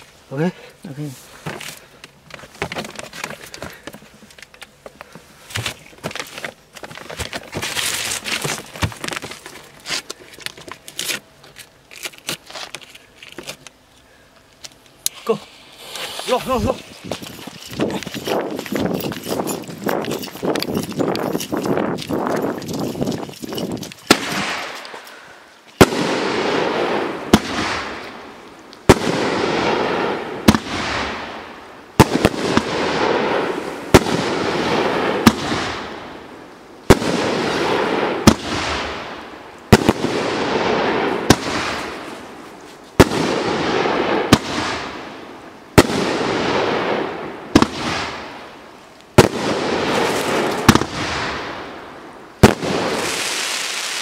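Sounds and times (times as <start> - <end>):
firework crackling hiss: 15.1 - 17.2, 49.2 - 51.8, 52.4 - 54.0
firework bangs: 24.1 - 24.8, 25.8 - 28.1, 28.8 - 36.2, 36.8 - 42.1, 43.0 - 45.1, 45.7 - 48.4, 49.2 - 51.8, 52.4 - 54.0.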